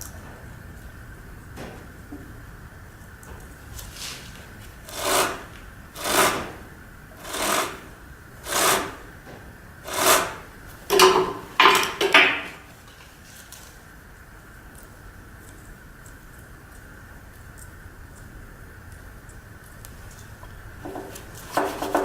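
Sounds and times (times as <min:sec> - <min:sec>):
rasping rubs: 0:03.8 - 0:09.2, 0:09.8 - 0:12.0.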